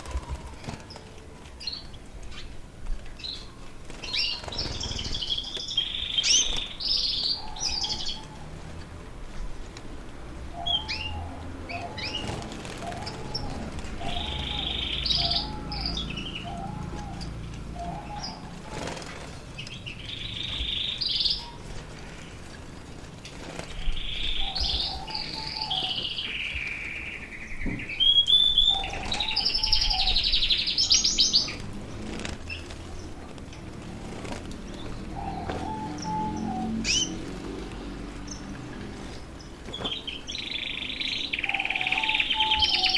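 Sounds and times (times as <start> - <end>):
wings fluttering: 0.0 - 7.0, 11.9 - 15.2, 16.8 - 25.3, 28.7 - 40.4
canaries singing and chirping: 0.0 - 42.9.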